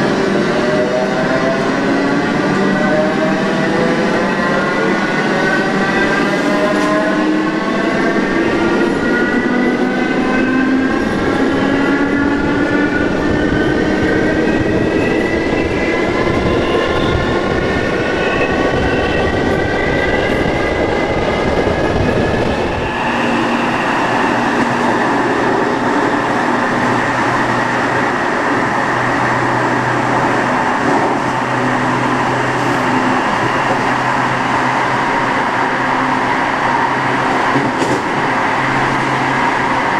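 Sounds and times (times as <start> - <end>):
train running gear rumble: 5.7 - 39.9.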